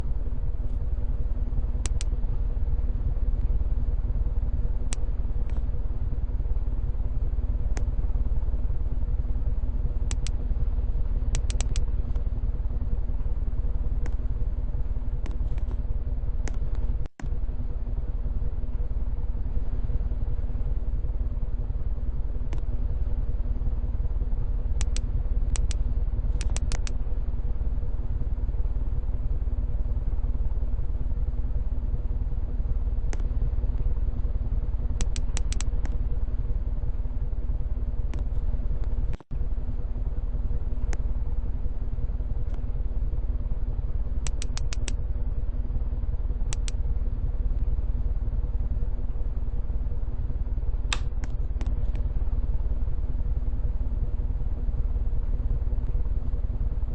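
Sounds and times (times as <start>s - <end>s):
ceiling fan motor hum: 0.0s - 56.9s
light ticks: 1.8s - 2.2s, 7.7s - 8.0s, 10.1s - 10.4s, 11.3s - 12.3s, 14.0s - 14.2s, 16.4s - 17.4s, 22.5s - 22.7s, 24.8s - 27.0s, 33.1s - 33.3s, 35.0s - 36.0s, 44.2s - 45.0s, 46.5s - 46.8s.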